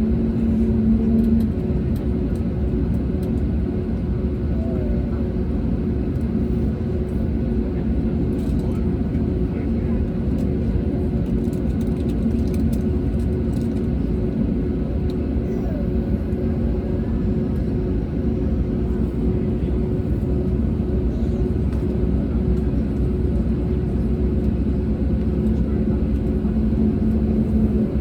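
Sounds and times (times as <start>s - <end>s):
aircraft engines idling in cabin: 0.0s - 28.0s.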